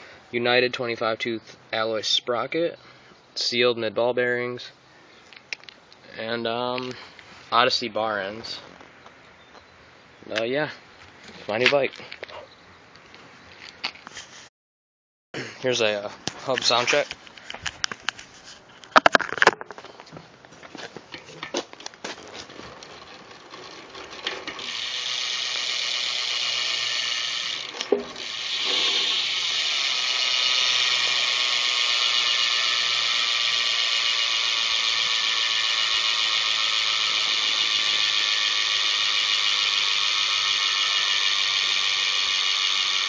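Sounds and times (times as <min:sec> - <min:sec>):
bike hub ratcheting buzz: 0:22.4 - 0:43.0.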